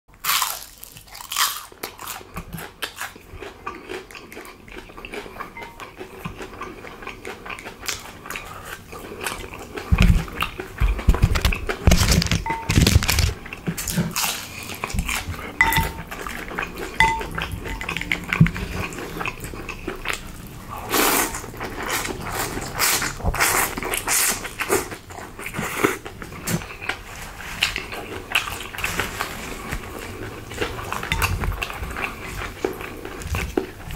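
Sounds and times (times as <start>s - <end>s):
crunching and chewing food: 0.1s - 33.9s
utensil clinking on bowl: 15.6s - 16.2s, 17.0s - 18.1s, 31.0s - 31.5s.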